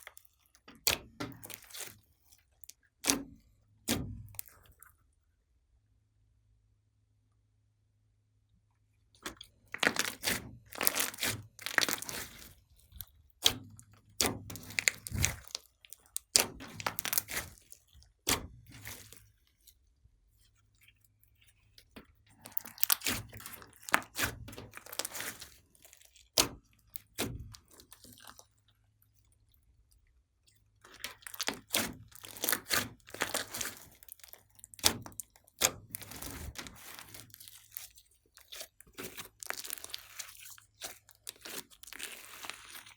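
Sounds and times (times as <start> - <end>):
slime squished crackling and popping: 0.0 - 3.2, 9.2 - 19.4, 21.8 - 28.4, 30.9 - 42.9.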